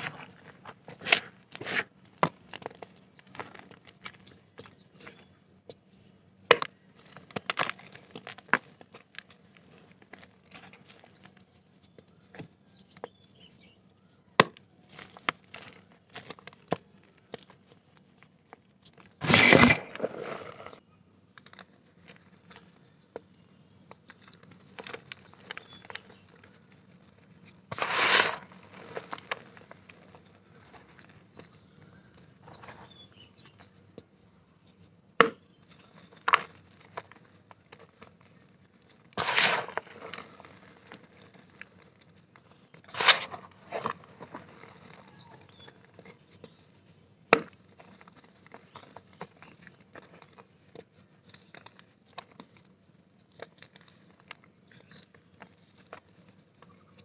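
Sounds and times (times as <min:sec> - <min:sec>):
dirt clumps crunching: 0:00.0 - 0:05.3, 0:19.0 - 0:20.8, 0:23.6 - 0:33.8, 0:35.2 - 0:46.6.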